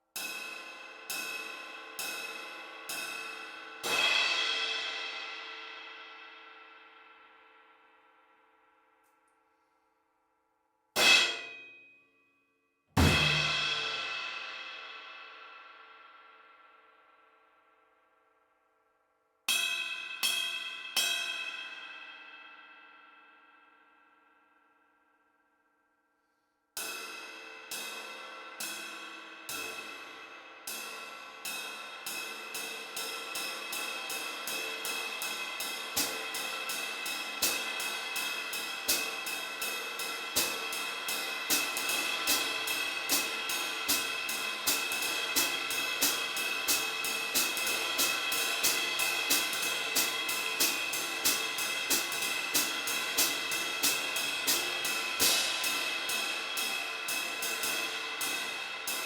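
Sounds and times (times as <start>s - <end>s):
china cymbal being struck: 13.0s - 16.1s, 26.8s - 59.0s.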